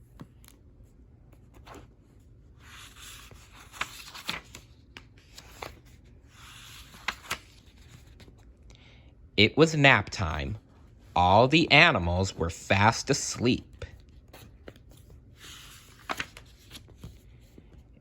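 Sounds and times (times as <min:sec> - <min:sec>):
paper pages rustling: 0:01.3 - 0:08.5, 0:13.8 - 0:18.0.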